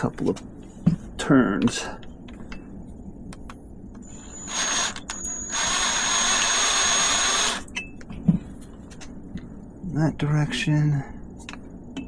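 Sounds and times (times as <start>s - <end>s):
power drill whine: 4.0s - 7.7s.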